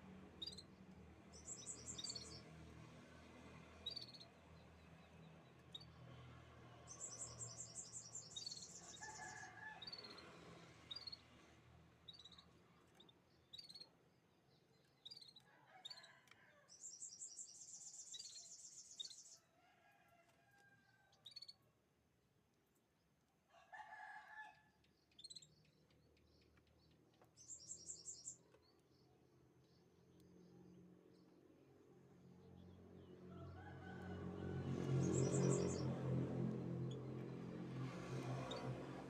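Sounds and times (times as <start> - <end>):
canaries chirping: 1.4 - 2.4, 7.1 - 9.0.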